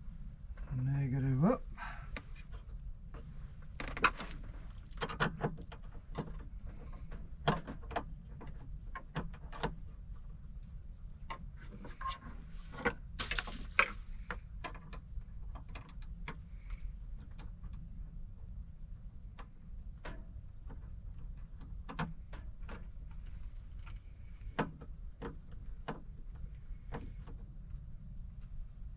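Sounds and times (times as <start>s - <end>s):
clicks and light knocks: 19.4s - 27.5s.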